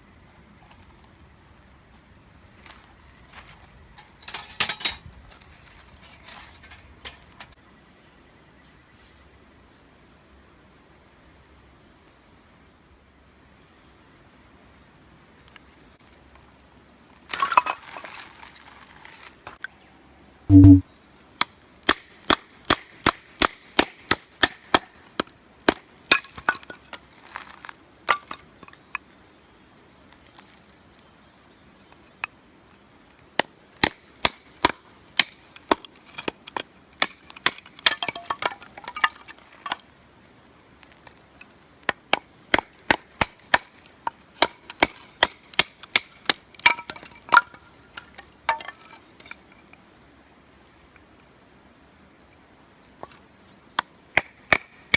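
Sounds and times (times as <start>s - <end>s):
knife striking wood: 20.5s - 20.8s.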